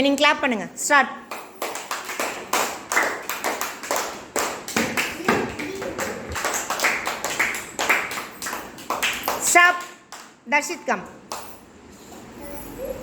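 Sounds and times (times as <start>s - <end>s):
children clapping in rhythm: 1.2s - 10.4s.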